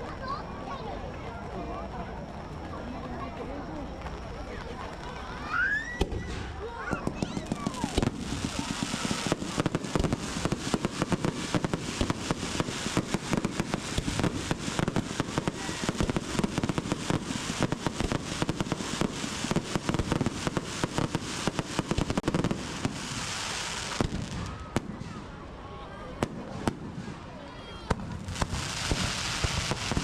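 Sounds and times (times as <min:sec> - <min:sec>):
fireworks banging and crackling: 0:00.0 - 0:30.0.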